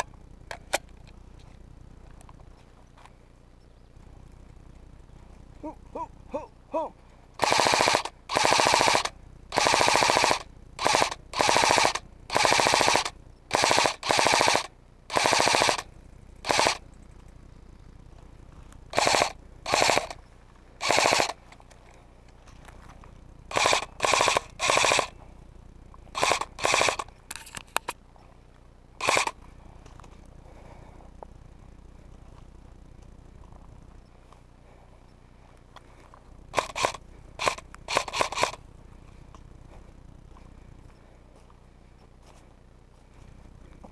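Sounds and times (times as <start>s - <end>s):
airsoft single shots: 7.4s - 15.8s, 19.0s - 20.2s, 20.8s - 21.4s, 23.5s - 25.1s, 26.2s - 27.0s
airsoft rifle bursts: 7.4s - 16.8s, 18.9s - 20.2s, 20.8s - 21.7s, 23.5s - 25.2s, 26.1s - 28.0s, 29.0s - 29.4s, 36.5s - 38.6s.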